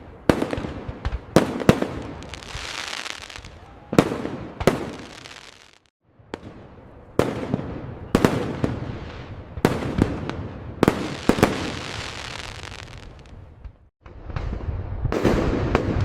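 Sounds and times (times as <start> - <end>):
firework bangs: 0.2 - 6.6, 7.2 - 16.0
firework crackling: 0.3 - 5.9, 8.2 - 14.6.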